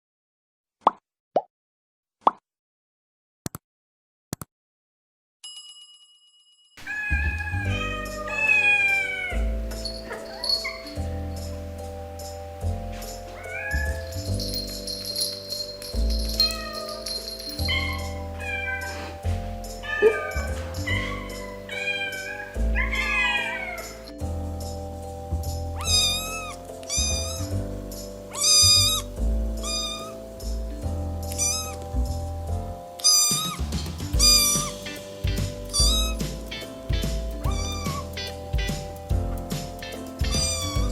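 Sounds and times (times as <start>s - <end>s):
cat meowing: 6.8s - 11.0s, 13.4s - 14.2s, 16.4s - 17.1s, 17.7s - 19.2s, 19.8s - 24.1s, 25.8s - 27.5s, 28.3s - 30.2s, 31.3s - 31.8s, 33.0s - 33.6s, 34.2s - 38.9s, 39.8s - 40.9s
light background music: 6.8s - 40.9s.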